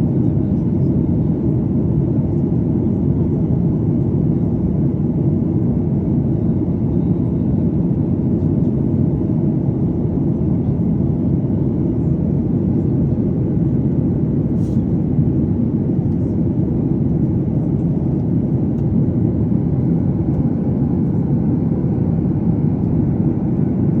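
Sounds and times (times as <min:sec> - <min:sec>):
airliner engine rumble: 0:00.0 - 0:24.0.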